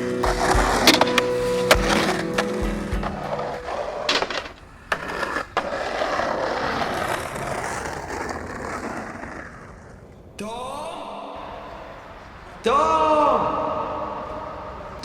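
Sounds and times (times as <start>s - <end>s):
skateboard clacking on ground: 0.0s - 9.9s
skateboard wheels rolling on pavement: 0.0s - 10.5s, 11.4s - 13.0s.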